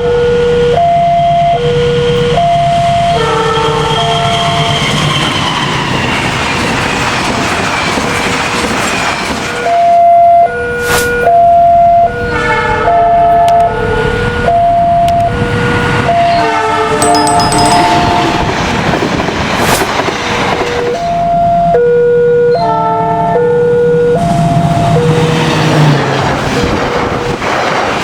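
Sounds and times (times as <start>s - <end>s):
two-tone locomotive horn: 0.0s - 4.9s, 9.8s - 18.8s, 21.3s - 25.4s
passing train rushing: 2.8s - 10.8s, 15.3s - 21.8s, 22.7s - 28.0s.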